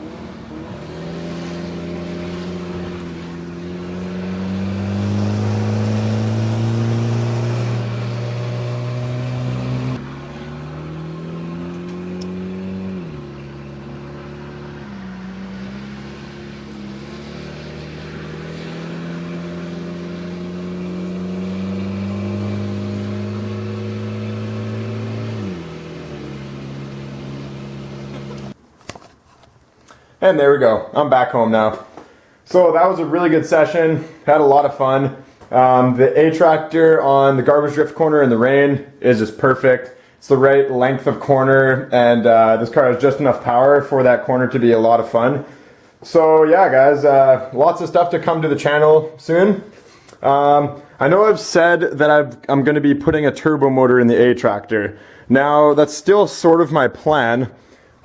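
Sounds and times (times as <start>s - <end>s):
car engine accelerating: 0.0s - 28.6s, 32.5s - 53.2s.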